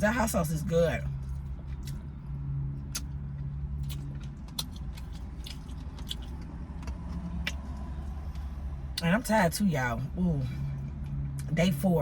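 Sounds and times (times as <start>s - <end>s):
chewing and biting fried meat: 1.1s - 9.0s.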